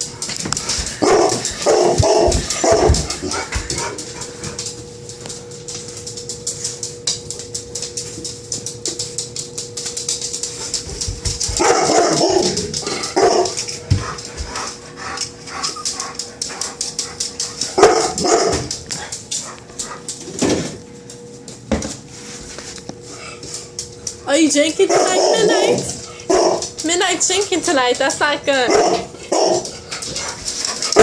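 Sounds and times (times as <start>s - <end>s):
steady hum: 0.0s - 31.0s
dogs barking and yipping: 0.4s - 4.5s, 10.8s - 20.1s, 24.6s - 27.6s, 28.5s - 31.0s.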